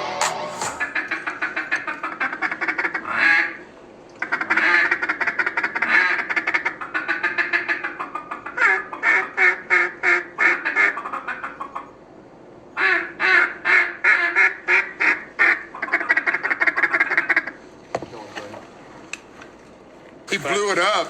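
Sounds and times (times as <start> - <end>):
duck quacking: 0.3 - 3.6, 4.2 - 11.9, 12.8 - 17.6.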